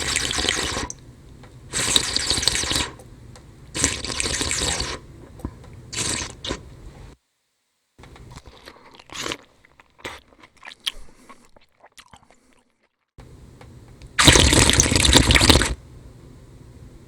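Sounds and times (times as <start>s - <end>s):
person slurping liquid: 0.0s - 1.0s, 1.7s - 3.0s, 3.7s - 7.2s, 8.2s - 13.0s, 14.2s - 15.8s.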